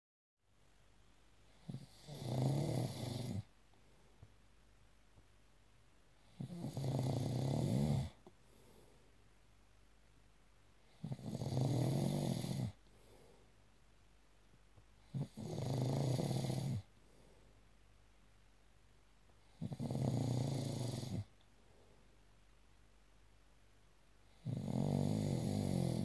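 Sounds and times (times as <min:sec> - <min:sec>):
person snoring: 0:01.6 - 0:03.5, 0:06.3 - 0:08.2, 0:11.0 - 0:12.8, 0:15.1 - 0:16.9, 0:19.6 - 0:21.3, 0:24.4 - 0:26.0.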